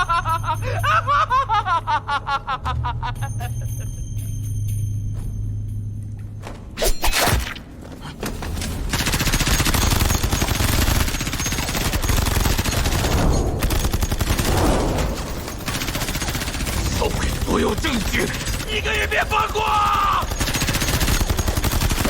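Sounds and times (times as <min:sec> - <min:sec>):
rapid gunfire: 0:08.9 - 0:22.0.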